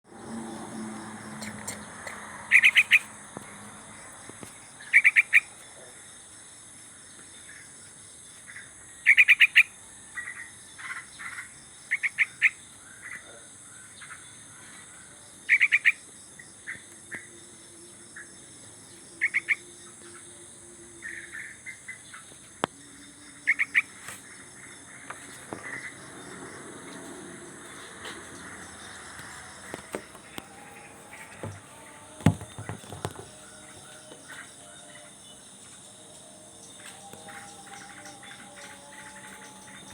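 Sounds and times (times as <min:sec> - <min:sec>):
high-pitched background drone: 0:28.6 - 0:39.9.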